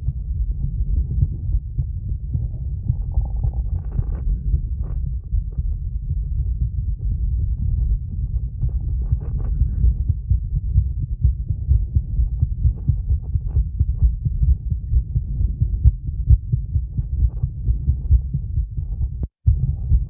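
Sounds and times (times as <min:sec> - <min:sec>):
heartbeat thuds: 0:00.0 - 0:20.0.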